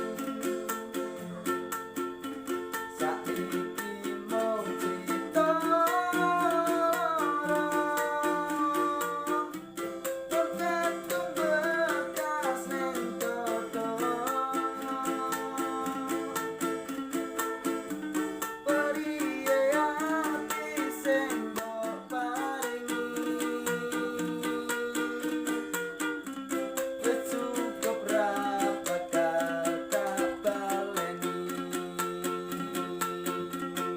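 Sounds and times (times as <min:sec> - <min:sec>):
person singing: 0:00.0 - 0:33.9
strummed ukulele: 0:00.0 - 0:33.9.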